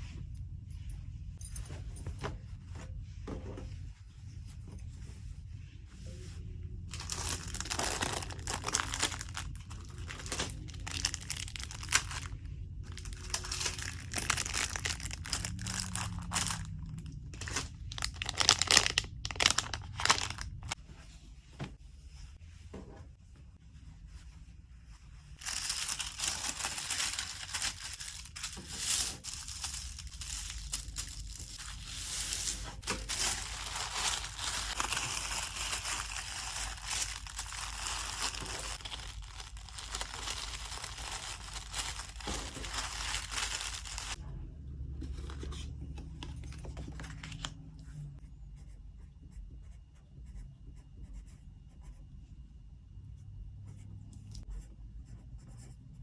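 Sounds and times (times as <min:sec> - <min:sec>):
packing material crinkling: 0:06.9 - 0:20.8, 0:25.4 - 0:44.2.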